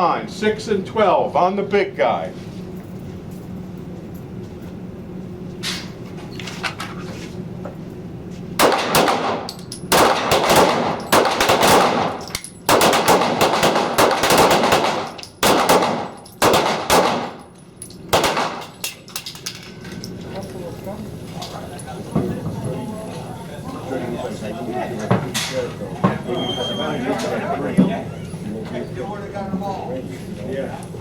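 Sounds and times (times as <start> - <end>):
pistols firing in volleys: 8.6 - 19.2.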